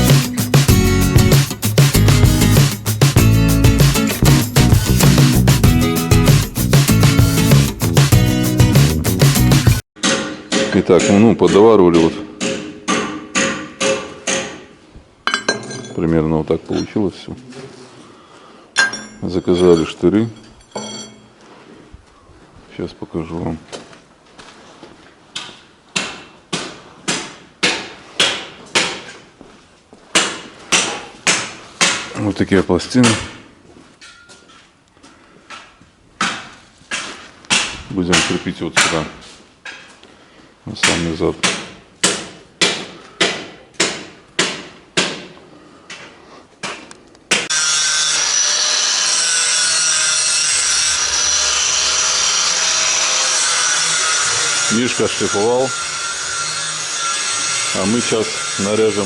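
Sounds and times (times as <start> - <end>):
angle grinder grinding steel: 47.5 - 59.0.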